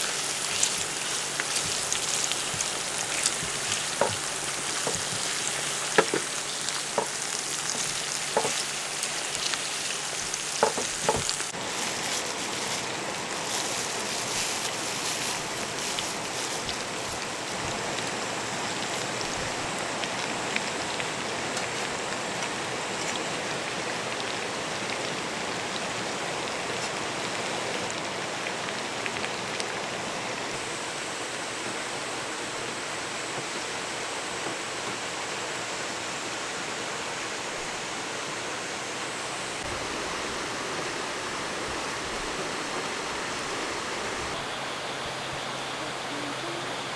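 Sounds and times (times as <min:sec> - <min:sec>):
food sizzling in a pan: 0:00.0 - 0:32.8.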